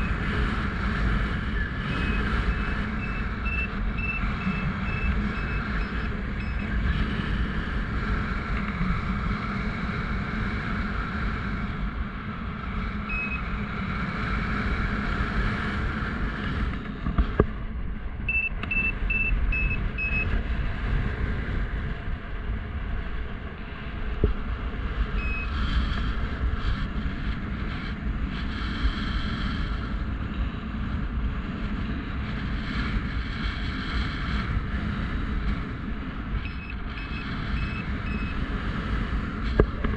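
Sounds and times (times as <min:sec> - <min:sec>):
wind buffeting microphone: 0:00.0 - 0:39.9
variometer high beeps: 0:01.9 - 0:06.8, 0:13.1 - 0:13.4, 0:18.3 - 0:20.3, 0:25.2 - 0:25.6, 0:36.4 - 0:38.4.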